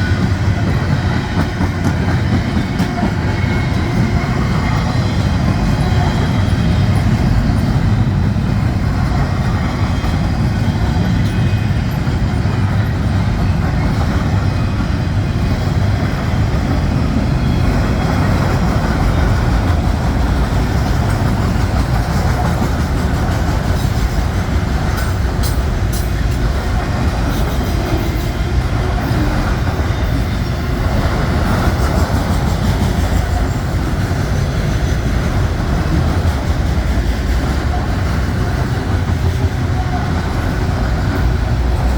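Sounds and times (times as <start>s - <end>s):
train wheels rumbling on rails: 0.0s - 41.9s.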